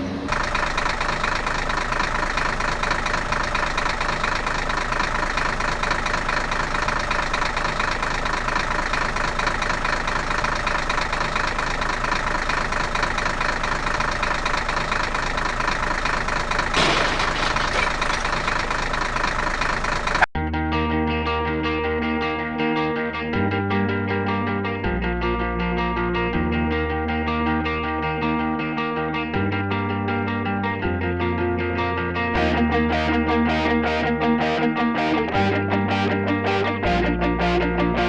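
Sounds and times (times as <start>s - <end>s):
engine idling with knocking: 0.3s - 20.3s.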